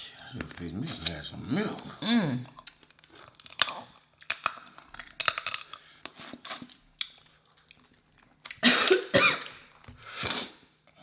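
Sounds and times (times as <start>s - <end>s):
chewing: 2.4s - 10.1s
crab shells cracking: 2.5s - 9.9s
loud cough: 8.6s - 9.6s.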